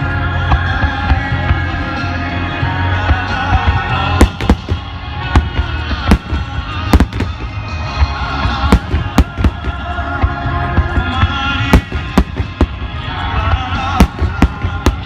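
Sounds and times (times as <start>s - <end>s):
music playing: 0.0s - 15.0s
fireworks bursting with sharp bangs: 3.6s - 15.0s.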